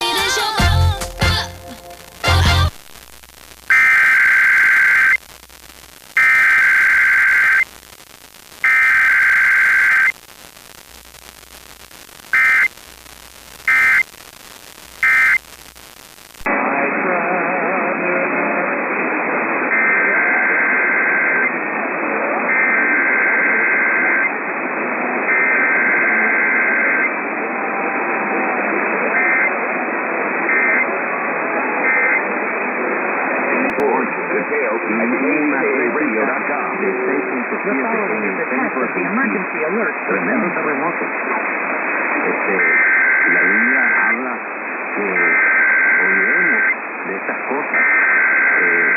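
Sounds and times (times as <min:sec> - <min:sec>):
radio static hiss: 0:00.0 - 0:48.9
buzzing data bursts: 0:00.4 - 0:16.5.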